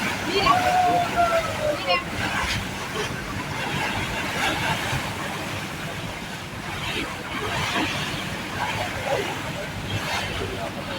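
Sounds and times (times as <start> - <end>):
faint voices: 0.0 - 2.6, 8.7 - 10.9
boat engines running: 0.0 - 10.9
water rushing along hull: 0.0 - 10.9.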